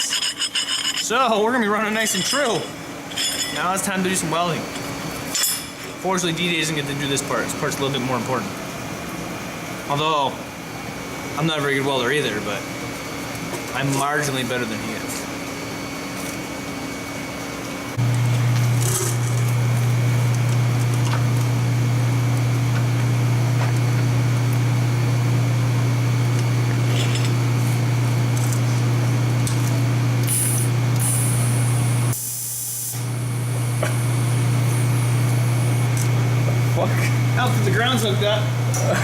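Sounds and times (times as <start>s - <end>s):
welder humming: 17.9s - 39.0s.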